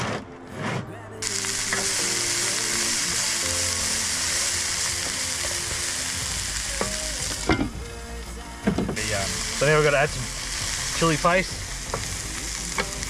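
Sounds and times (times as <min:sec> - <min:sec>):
onions sizzling in hot oil: 0:01.2 - 0:08.4, 0:09.0 - 0:13.0.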